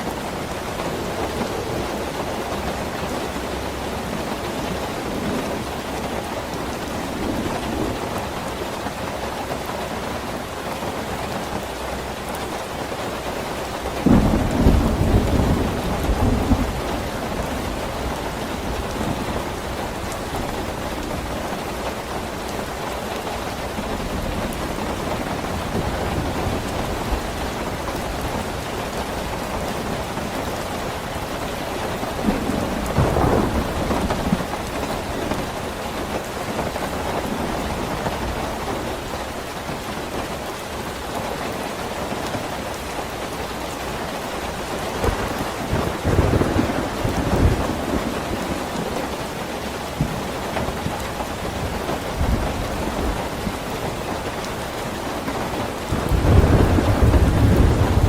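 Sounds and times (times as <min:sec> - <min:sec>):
steady rain falling: 0:00.0 - 0:58.0
thunder rumbling: 0:13.8 - 0:39.7, 0:44.4 - 0:58.0.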